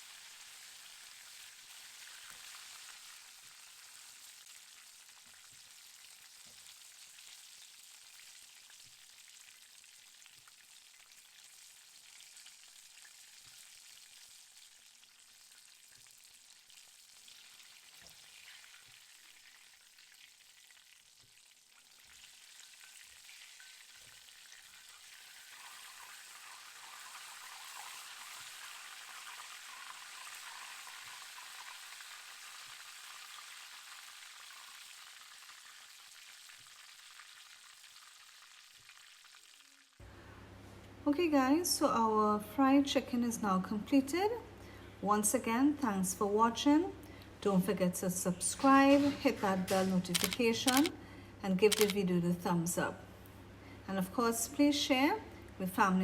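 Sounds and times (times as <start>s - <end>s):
chicken sizzling in hot oil: 0.0s - 40.0s.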